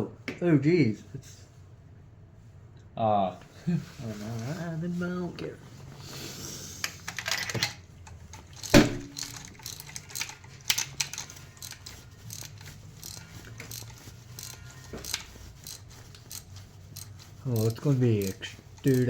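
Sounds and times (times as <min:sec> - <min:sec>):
metal hand tools clinking: 0:07.1 - 0:19.0.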